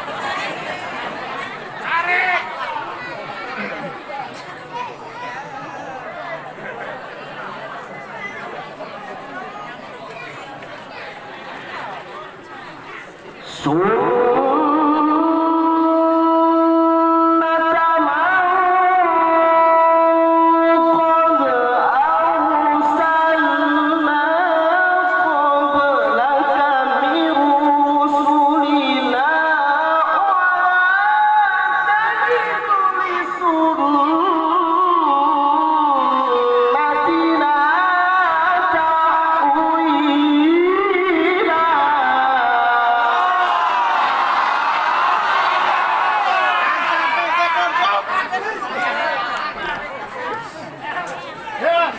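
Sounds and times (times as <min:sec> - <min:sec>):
man reciting melodically: 0:13.4 - 0:43.4.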